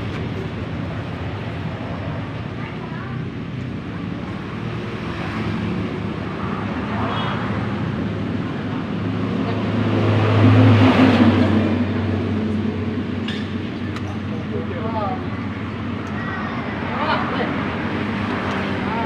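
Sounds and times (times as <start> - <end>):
vehicle engine passing by: 4.6 - 13.8.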